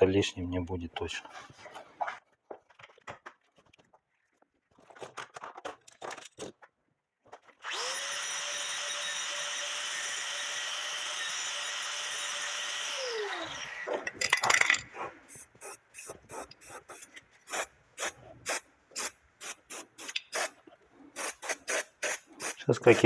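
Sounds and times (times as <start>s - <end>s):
handheld power tool running: 7.6s - 14.1s.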